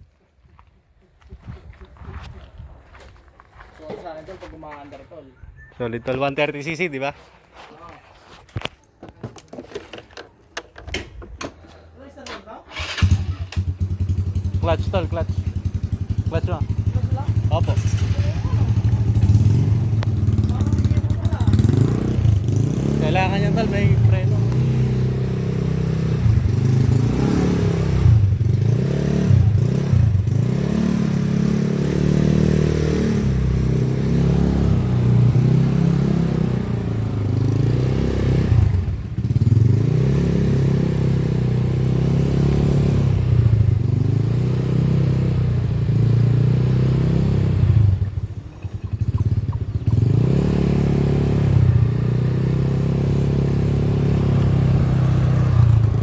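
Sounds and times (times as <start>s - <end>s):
scooter engine revving: 12.7s - 56.0s.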